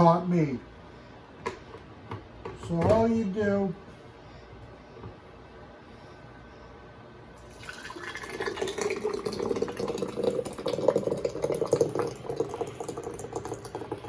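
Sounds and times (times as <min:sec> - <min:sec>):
thick sauce pouring into glass jar: 0:07.5 - 0:14.0.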